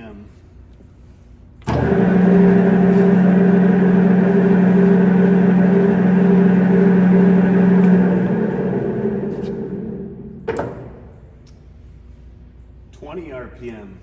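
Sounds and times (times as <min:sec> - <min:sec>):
lathe motor and gearbox hum: 0:01.6 - 0:12.2.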